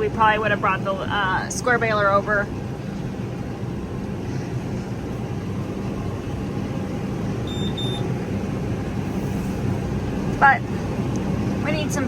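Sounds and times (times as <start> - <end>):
tractor engine running: 0.0 - 12.0
high-pitched beeps: 7.5 - 8.0.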